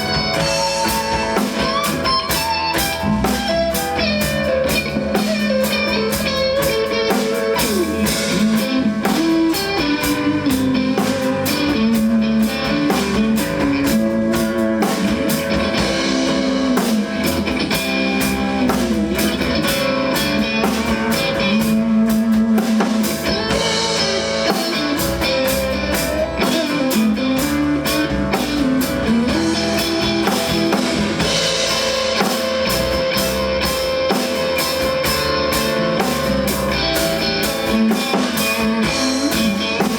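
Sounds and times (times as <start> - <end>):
drum kit beat: 0.0 - 39.9
guitar: 0.0 - 39.9.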